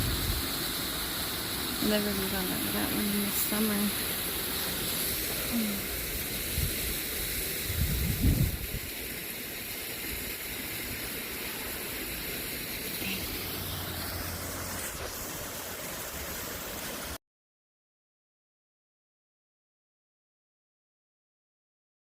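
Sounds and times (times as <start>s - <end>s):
waterfall rushing: 0.0s - 17.2s.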